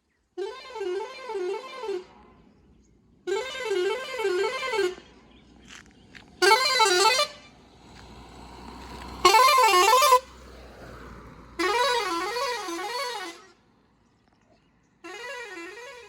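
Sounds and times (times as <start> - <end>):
warbling car horn: 0.4 - 2.5, 3.2 - 5.2, 6.4 - 7.6, 9.2 - 10.3, 11.6 - 13.6, 15.0 - 16.0.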